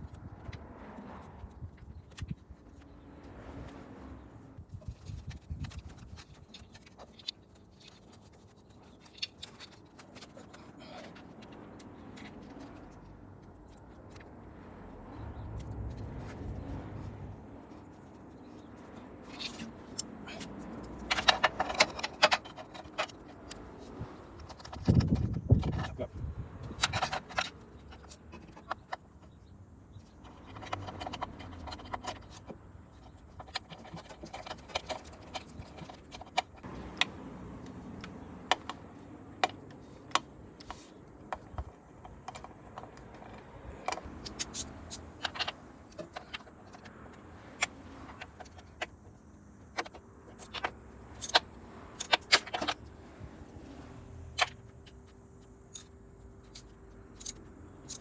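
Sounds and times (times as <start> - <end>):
metal tools clinking: 43.1 - 46.8, 55.7 - 58.0.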